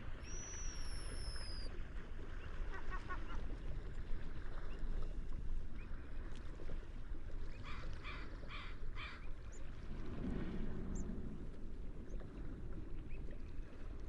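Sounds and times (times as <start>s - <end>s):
sea waves washing: 9.6s - 14.0s.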